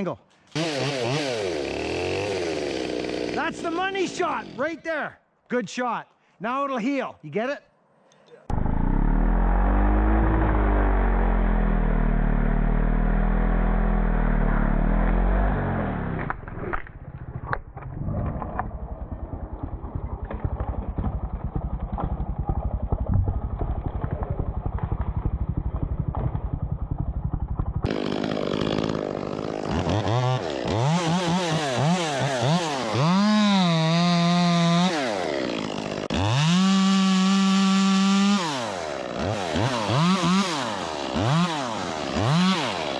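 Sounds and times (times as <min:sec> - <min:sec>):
chainsaw engine revving: 0:00.5 - 0:04.7, 0:08.5 - 0:16.3, 0:27.8 - 0:42.9
loud low wavering rumble: 0:08.5 - 0:14.9.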